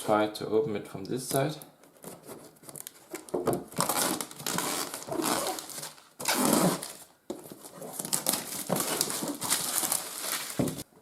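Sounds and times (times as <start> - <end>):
plastic wrap tearing and crinkling: 2.5 - 10.9.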